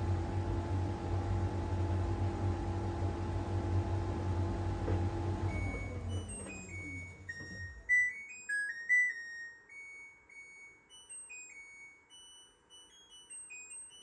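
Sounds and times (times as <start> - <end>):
machine low rumble: 0.0 - 7.8.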